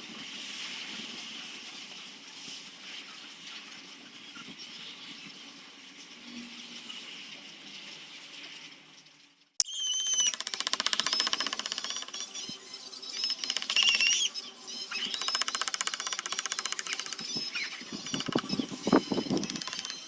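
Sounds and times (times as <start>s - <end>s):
power tool rattling against wood: 9.8s - 20.0s.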